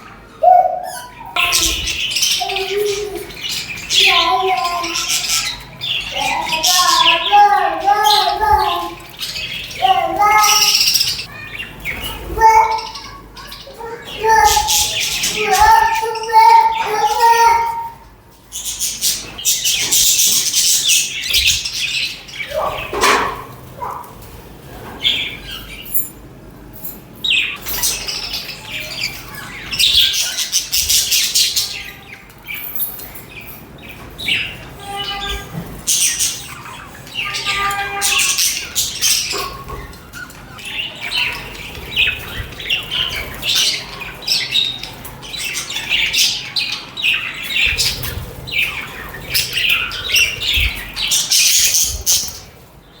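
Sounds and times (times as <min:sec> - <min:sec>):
budgerigars chattering: 0:00.9 - 0:17.6, 0:33.8 - 0:52.6.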